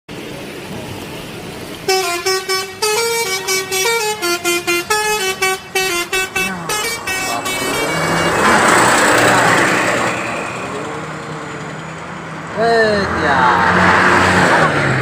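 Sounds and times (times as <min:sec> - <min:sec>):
engine and traffic hiss: 0:00.1 - 0:15.0
bus musical horn tune: 0:01.8 - 0:10.6.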